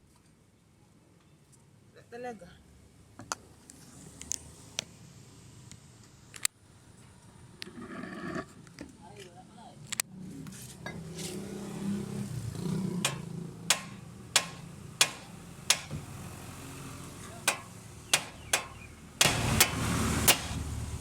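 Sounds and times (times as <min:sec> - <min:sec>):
hammer striking metal: 0:13.0 - 0:16.2, 0:17.4 - 0:20.6
loud hissing: 0:13.8 - 0:21.0.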